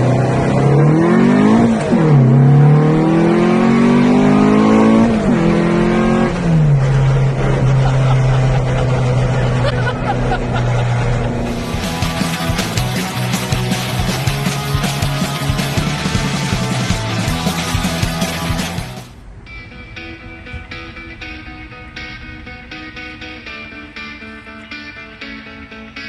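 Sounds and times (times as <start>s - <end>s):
car engine revving: 0.0s - 19.2s.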